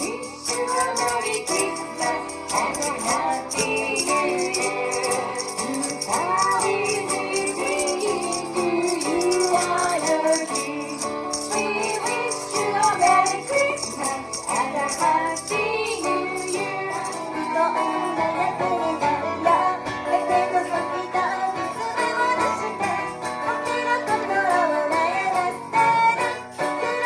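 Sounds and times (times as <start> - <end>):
ukulele playing: 0.0 - 13.4
jingle bells shaken: 0.0 - 19.0, 20.1 - 27.0.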